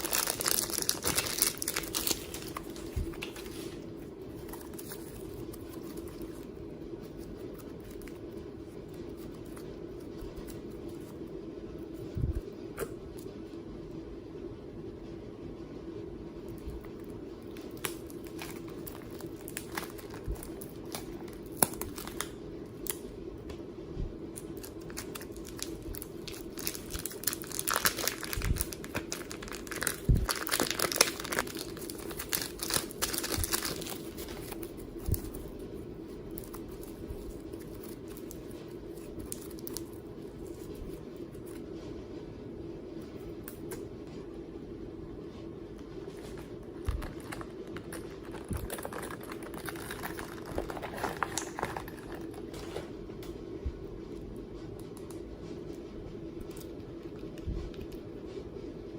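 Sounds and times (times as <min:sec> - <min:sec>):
slime crinkly crackling: 0:00.0 - 0:11.3, 0:16.6 - 0:23.1, 0:24.3 - 0:41.7, 0:46.0 - 0:52.9
steady low hum: 0:00.0 - 0:58.9.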